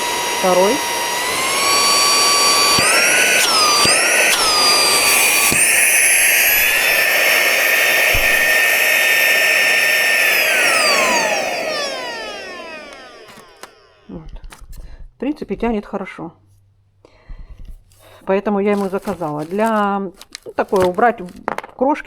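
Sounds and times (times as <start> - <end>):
car vacuum cleaner motor whining: 0.0 - 14.8, 18.7 - 21.4
vacuum switch click: 1.7 - 13.9.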